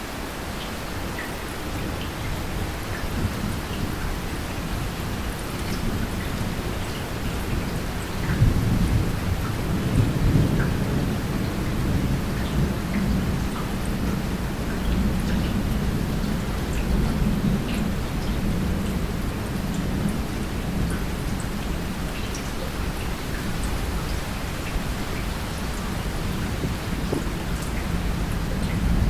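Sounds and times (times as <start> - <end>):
steady rain falling: 0.0 - 29.0
thunder rumbling: 24.8 - 29.0.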